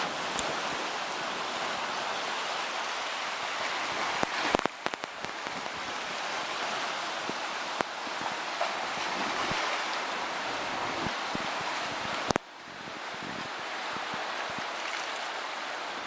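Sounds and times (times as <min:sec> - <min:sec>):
ocean surf hissing: 0:00.0 - 0:16.0.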